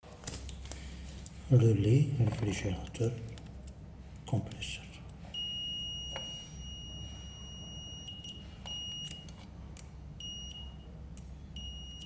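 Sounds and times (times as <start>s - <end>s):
multimeter continuity beeps: 5.3s - 9.4s, 10.2s - 12.0s.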